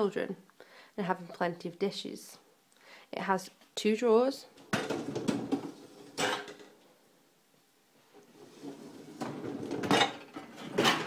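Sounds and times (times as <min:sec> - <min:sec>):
dishwasher rack rolling out: 0:04.9 - 0:06.6, 0:08.3 - 0:11.0.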